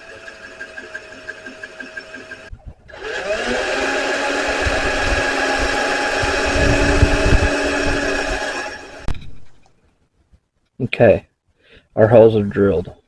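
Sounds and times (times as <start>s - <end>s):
electric drill whining: 0.0s - 9.1s
drill bit thumps: 0.1s - 9.6s.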